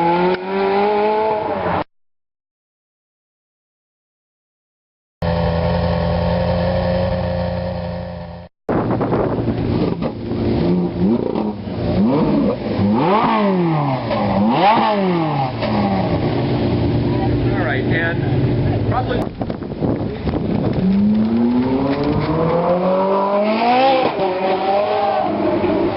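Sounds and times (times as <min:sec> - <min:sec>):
car engine revving: 0:05.2 - 0:25.9.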